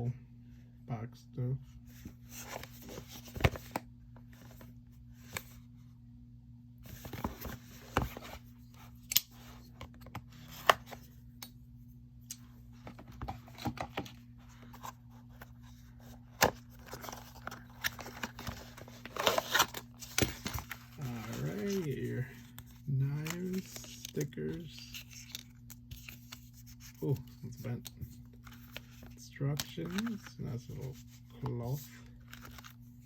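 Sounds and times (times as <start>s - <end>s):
faint low hum: 0.0s - 33.0s
cardboard rustling and tearing: 16.4s - 27.3s.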